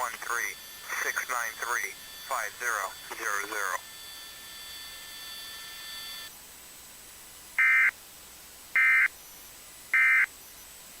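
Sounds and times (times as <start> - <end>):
digital data tone bursts: 0.0 - 6.3
low hiss: 6.3 - 11.0.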